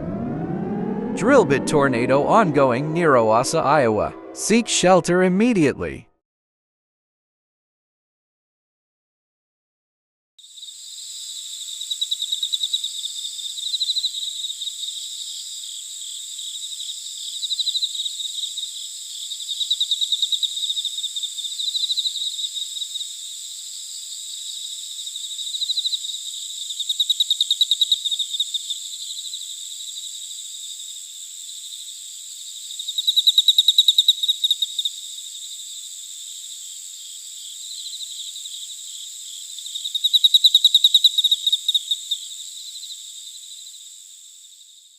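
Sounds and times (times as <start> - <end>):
insects buzzing and chirping: 10.4 - 44.9.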